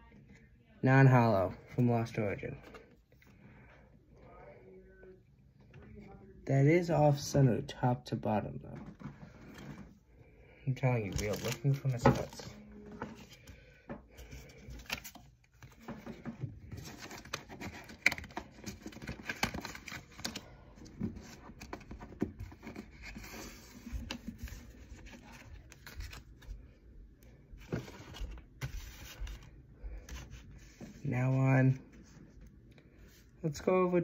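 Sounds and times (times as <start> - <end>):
cards and plastic packaging rustling: 10.7 - 34.0.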